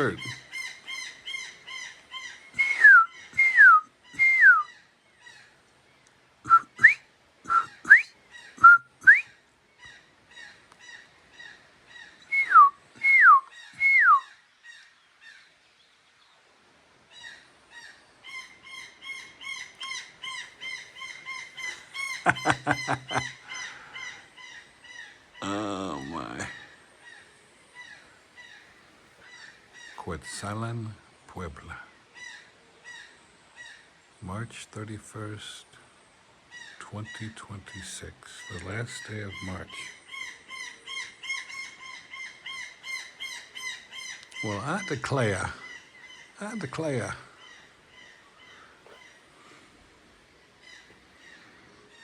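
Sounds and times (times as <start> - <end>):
lower louder bird call: 0.0 - 5.6, 6.4 - 15.5, 17.1 - 30.4
birds chirping: 0.0 - 52.0
bird slurred whistles: 2.6 - 4.7, 6.5 - 9.4, 12.3 - 14.3.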